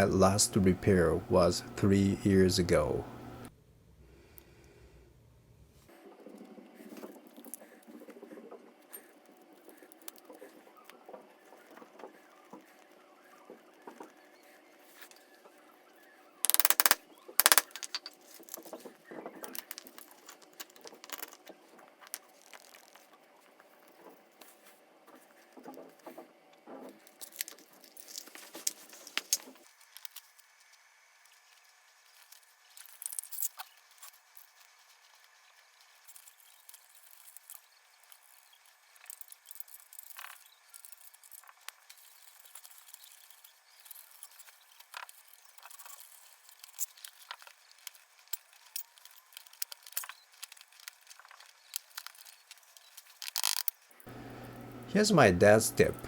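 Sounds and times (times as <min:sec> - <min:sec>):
hands and tools on bicycle tire: 0:39.0 - 0:53.8.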